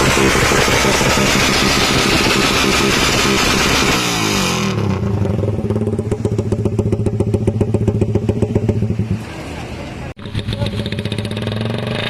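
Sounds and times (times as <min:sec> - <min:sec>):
motorcycle engine idling: 0:04.9 - 0:09.2.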